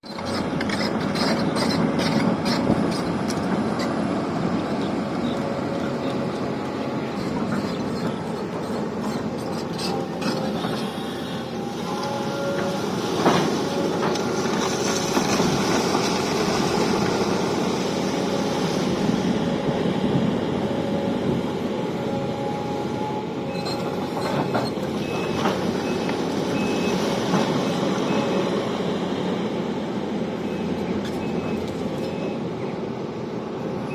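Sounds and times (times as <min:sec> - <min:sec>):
excavator diesel engine running: 0:00.0 - 0:33.9
short beeps: 0:30.4 - 0:32.4.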